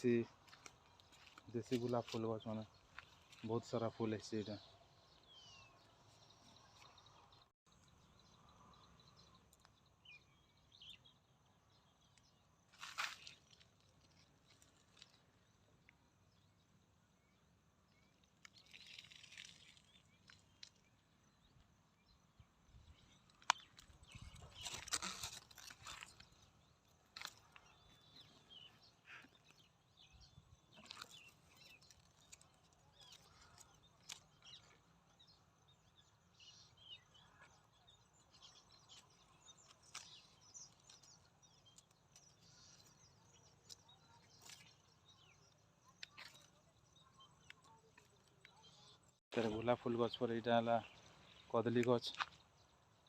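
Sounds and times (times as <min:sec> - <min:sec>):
soft rustles and crunches: 0:00.3 - 0:03.8, 0:12.2 - 0:15.9, 0:18.0 - 0:21.1, 0:22.9 - 0:34.8, 0:38.4 - 0:48.8
faint high bird chirps: 0:27.2 - 0:53.0.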